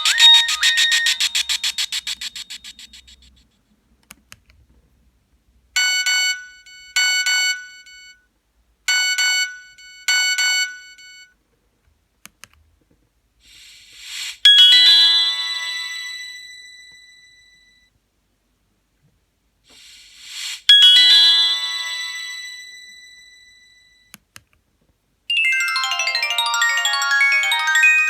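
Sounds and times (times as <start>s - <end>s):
bright ringing chime: 0.0s - 2.8s, 25.3s - 28.0s
fast electronic beeping ringtone: 0.0s - 3.2s, 25.3s - 28.0s.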